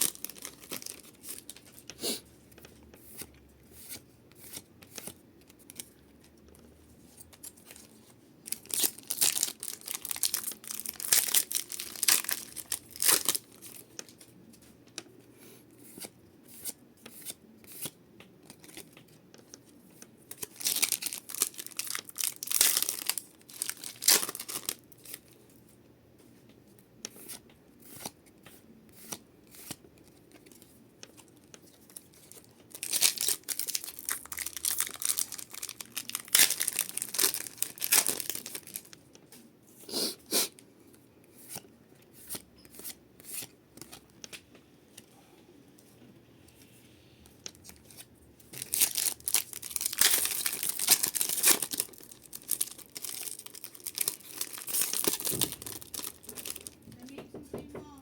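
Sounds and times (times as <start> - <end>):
foil wrappers tearing and crinkling: 0.0 - 1.8, 8.5 - 14.1, 20.3 - 25.2, 30.5 - 39.0, 48.5 - 56.8.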